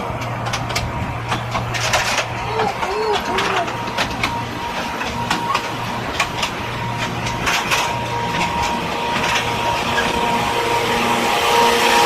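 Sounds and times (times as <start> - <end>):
train motor hum: 0.0 - 12.0
clicks and rattles: 0.1 - 10.2.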